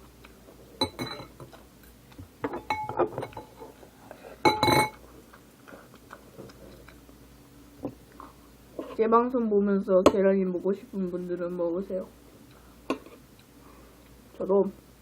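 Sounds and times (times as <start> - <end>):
metal spoon clinking on a dish: 0.8 - 1.3, 2.5 - 3.5, 4.4 - 5.0.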